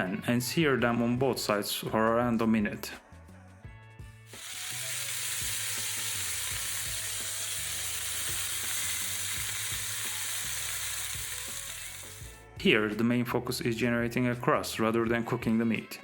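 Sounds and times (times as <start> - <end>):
steaks sizzling in a pan: 4.3 - 12.4.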